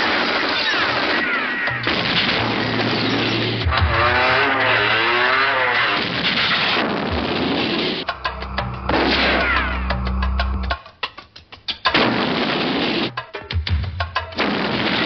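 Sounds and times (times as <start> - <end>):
explosions: 0.0 - 8.1, 8.8 - 9.9, 11.9 - 13.1, 14.4 - 15.0
gunfire: 0.0 - 8.1, 8.9 - 9.7, 11.9 - 13.2, 14.4 - 15.0
action film soundtrack: 1.2 - 6.8, 8.0 - 12.0.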